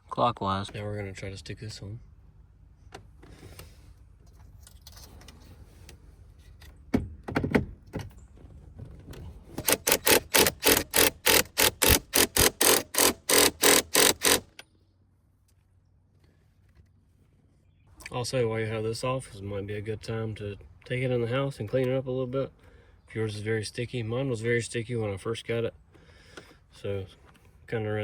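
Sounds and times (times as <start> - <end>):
fast sharp clicks: 9.6 - 14.6.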